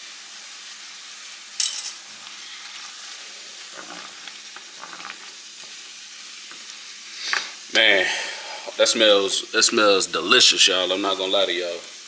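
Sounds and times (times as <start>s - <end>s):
vegetables sizzling in a pan: 0.0s - 12.0s
spoon scraping a pan: 1.9s - 5.8s.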